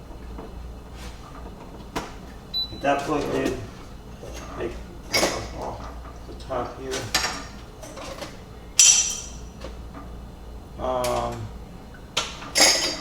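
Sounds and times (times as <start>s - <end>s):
sharp clack of appliance part: 8.8s - 9.4s.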